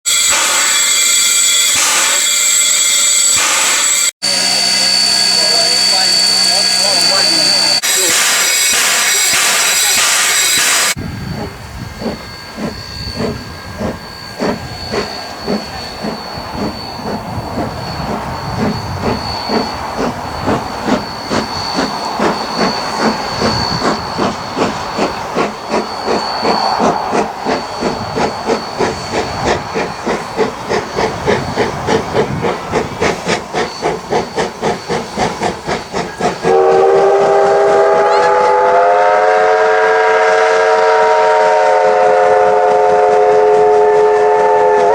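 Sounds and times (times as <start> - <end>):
steam whistle blast: 0.1 - 11.0, 36.4 - 44.9
steam locomotive exhaust beats: 0.1 - 44.9.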